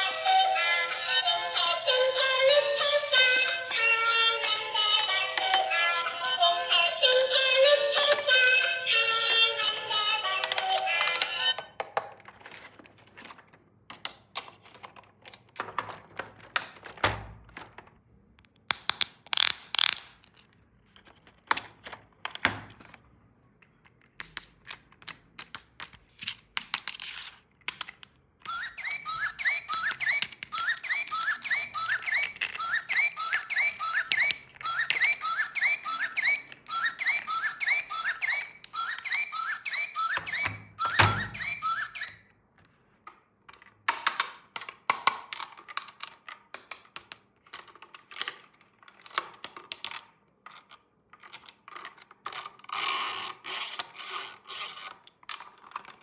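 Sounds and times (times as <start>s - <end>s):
plastic toy pieces handled: 3.2s - 8.6s, 9.9s - 18.0s, 18.6s - 23.0s, 23.6s - 42.2s, 43.0s - 56.0s
squeaky rising chirps: 28.5s - 42.2s.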